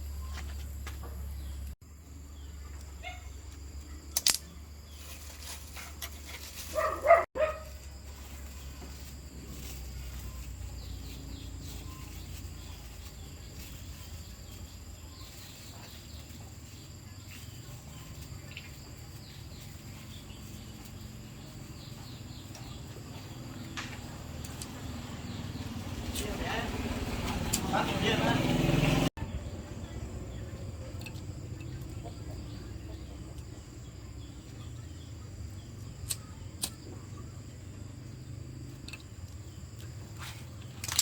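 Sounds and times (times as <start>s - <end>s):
faint insect chirps: 6.5s - 26.8s, 29.3s - 40.9s
bird chirps: 8.2s - 27.7s.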